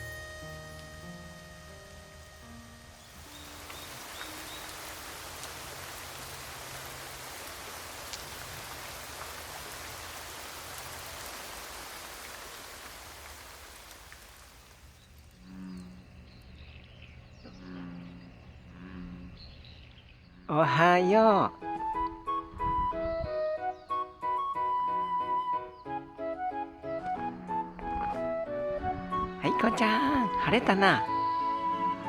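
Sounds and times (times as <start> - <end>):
soft background music: 0.0 - 4.7, 20.7 - 32.0
heavy rain falling: 1.8 - 15.4
sharp raindrop hits: 3.1 - 15.4.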